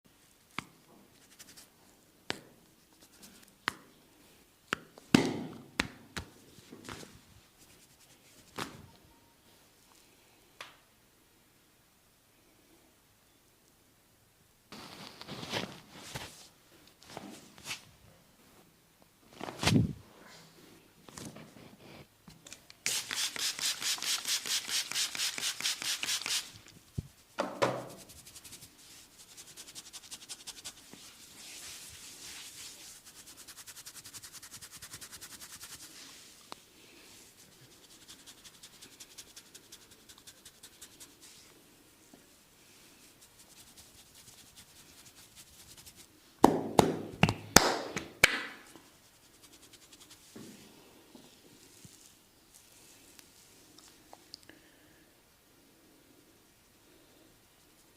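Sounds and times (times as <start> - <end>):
hands rubbing hair: 0.5 - 3.8, 6.2 - 8.8, 22.8 - 41.6, 42.7 - 46.3, 48.7 - 50.4, 51.6 - 54.1.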